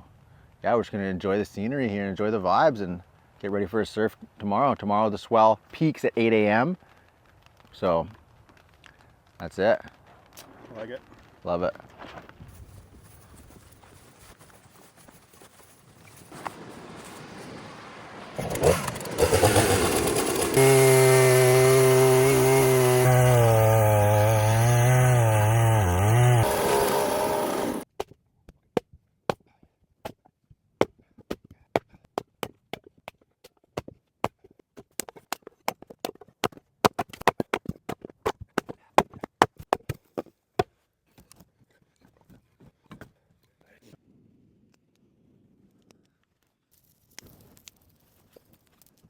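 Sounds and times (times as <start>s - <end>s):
small motor running: 18.4s - 27.8s.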